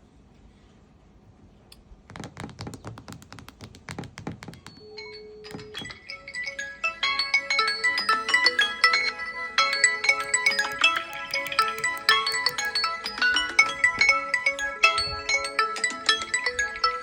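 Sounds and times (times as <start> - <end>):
sharp taps: 2.1 - 4.9
phone ringtone: 4.7 - 17.0.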